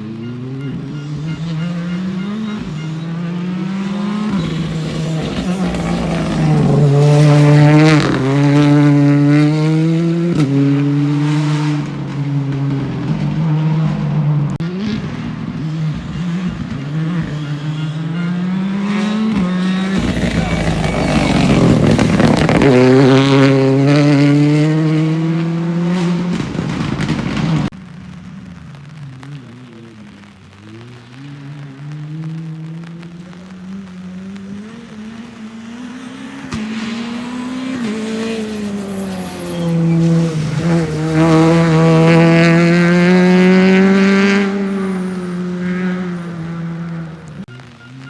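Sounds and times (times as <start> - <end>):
rally car engine at full throttle: 0.0 - 48.0.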